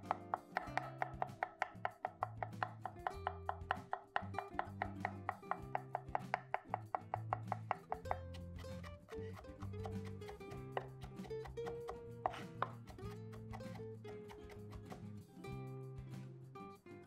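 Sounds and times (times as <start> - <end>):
background music with bass line: 0.0 - 17.0.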